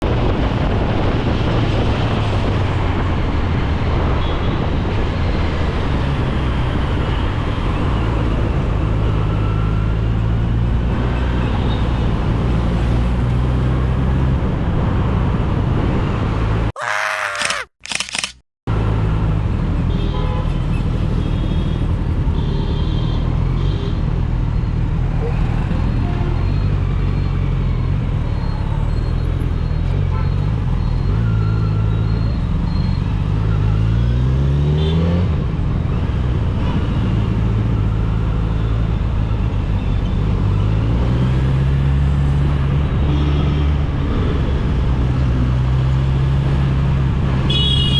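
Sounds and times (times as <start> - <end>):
motorcycle engine revving in traffic: 0.0 - 16.7, 18.7 - 47.9
car horns: 47.5 - 47.9.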